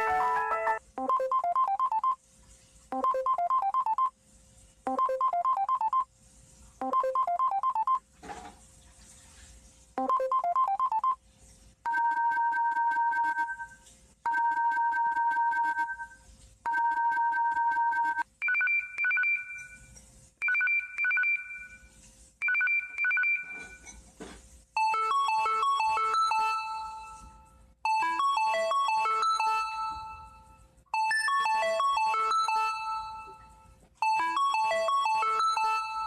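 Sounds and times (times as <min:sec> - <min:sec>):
short melodic ringtone: 0:00.0 - 0:02.2, 0:24.8 - 0:36.0.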